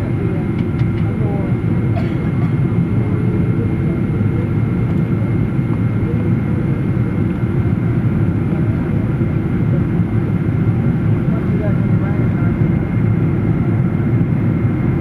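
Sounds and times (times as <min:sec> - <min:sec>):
jet engines roaring: 0:00.0 - 0:15.0.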